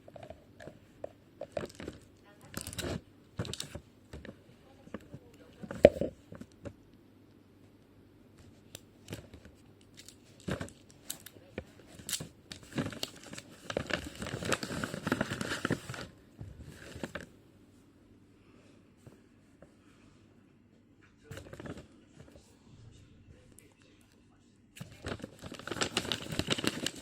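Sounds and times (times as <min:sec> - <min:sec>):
plastic crinkling and tearing: 0:01.5 - 0:04.3, 0:09.1 - 0:17.3, 0:21.3 - 0:21.9, 0:24.8 - 0:27.0.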